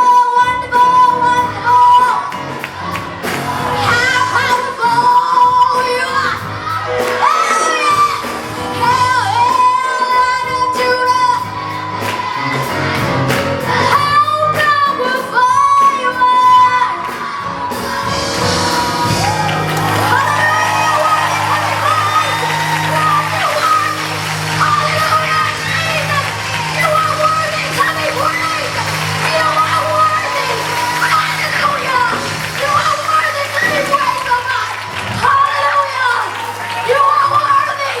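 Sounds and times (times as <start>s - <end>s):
band accompaniment: 0.0s - 38.0s
people shouting: 17.4s - 37.6s.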